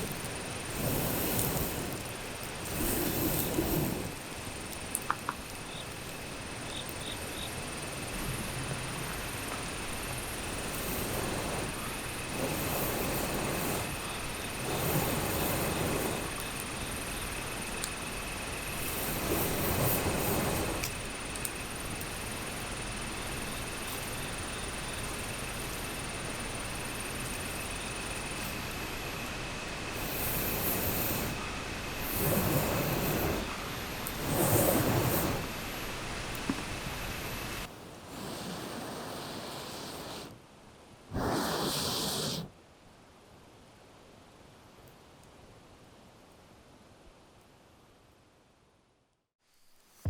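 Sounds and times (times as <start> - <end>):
high insect drone: 0.0 - 37.7.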